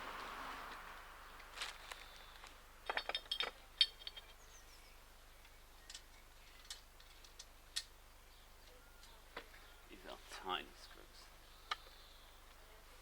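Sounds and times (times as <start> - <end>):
small metal parts clinking: 2.8 - 4.4.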